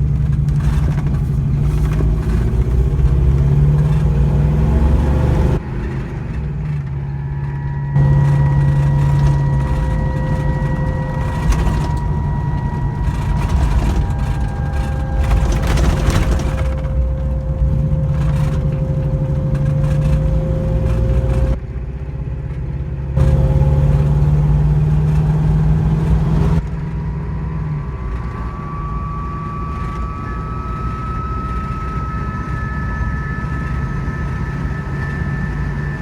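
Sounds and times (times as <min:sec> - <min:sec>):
drivetrain and road hum: 0:00.0 - 0:36.0
high-pitched whine: 0:00.5 - 0:21.7, 0:23.1 - 0:36.0.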